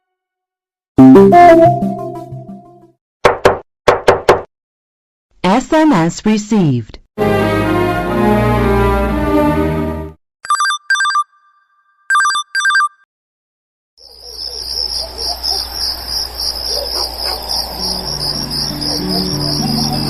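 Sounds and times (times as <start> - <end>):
melodic ringtone: 1.0 - 2.6, 10.5 - 13.0
low melody: 1.0 - 2.8
electronic telephone ring: 10.4 - 13.0
chirping crickets ringtone: 14.0 - 20.0.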